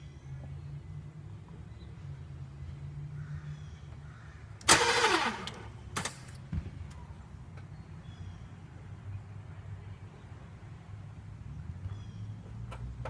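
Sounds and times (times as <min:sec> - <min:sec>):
starter motor cranking: 0:04.6 - 0:06.2
thump: 0:06.5 - 0:06.8.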